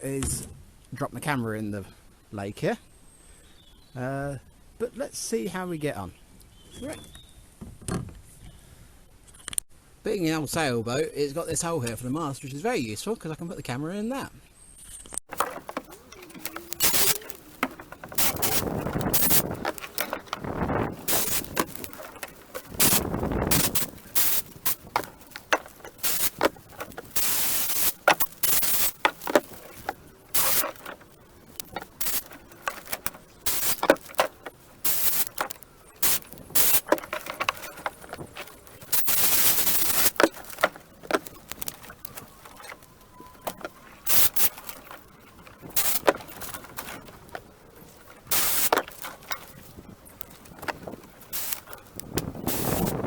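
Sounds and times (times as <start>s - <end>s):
tree branches knocking and rustling: 15.3s - 53.0s.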